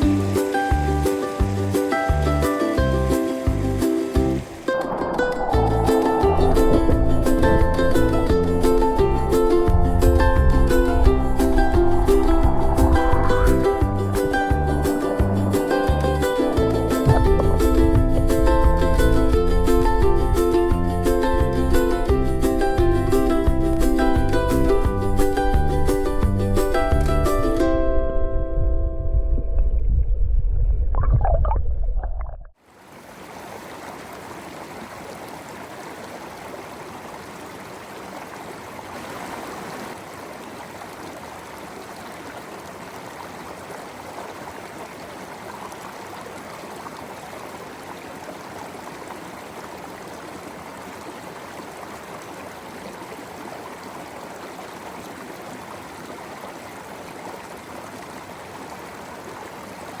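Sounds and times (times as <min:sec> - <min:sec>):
creek water rushing: 0:00.0 - 0:27.8, 0:32.6 - 1:00.0
music: 0:00.0 - 0:29.4.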